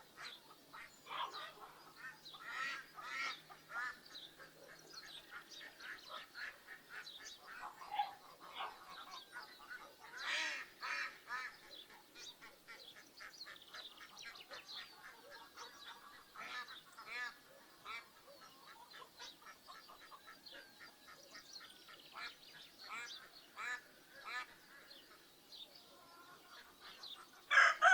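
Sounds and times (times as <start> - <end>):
ducks quacking: 0.0 - 25.3, 25.9 - 27.9
geese honking: 27.5 - 27.9.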